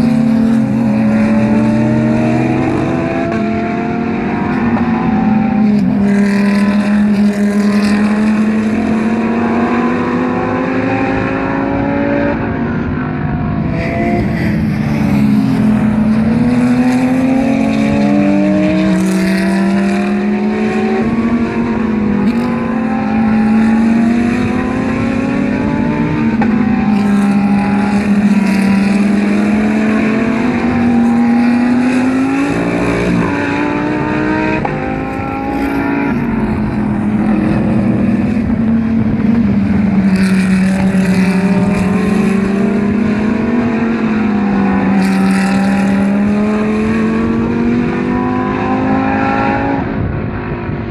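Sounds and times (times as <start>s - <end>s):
race car engines revving: 0.0s - 50.9s.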